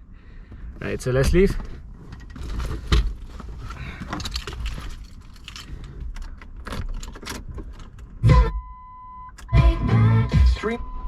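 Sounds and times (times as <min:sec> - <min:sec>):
handling clicks and knocks: 0:02.1 - 0:08.2
keys jangling: 0:04.1 - 0:08.1.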